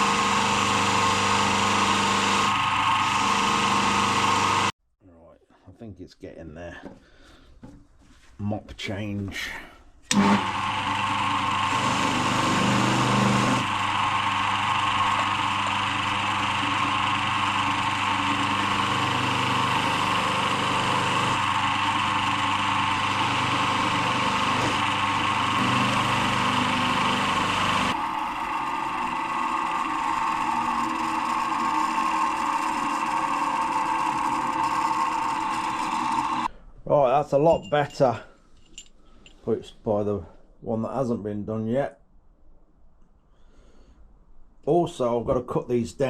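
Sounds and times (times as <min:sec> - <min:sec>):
polishing machine motor whine: 0:00.0 - 0:04.7, 0:10.1 - 0:36.5.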